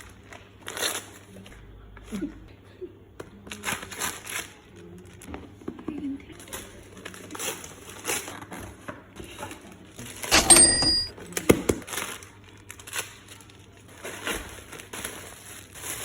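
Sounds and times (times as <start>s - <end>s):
sharp ringing clink: 10.3s - 11.1s
packaging crinkling and rustling: 11.9s - 16.0s.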